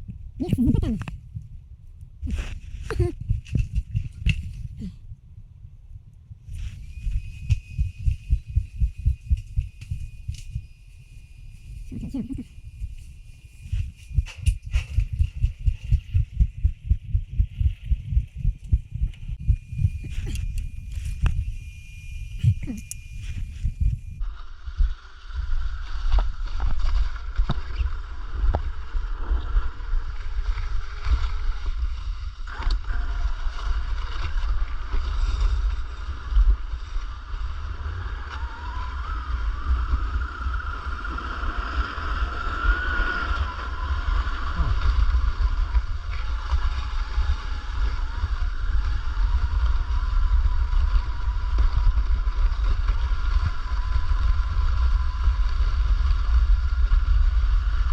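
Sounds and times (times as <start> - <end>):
heavy low rumble: 0.0 - 27.4
electric motor whine: 19.4 - 57.9.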